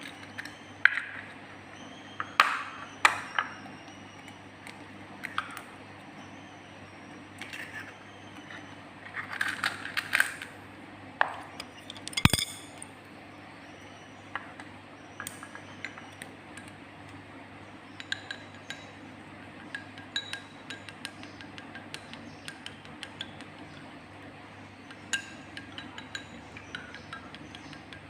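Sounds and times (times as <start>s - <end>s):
utensils and dishes clinking: 11.8s - 12.9s, 19.6s - 21.1s, 25.0s - 28.0s.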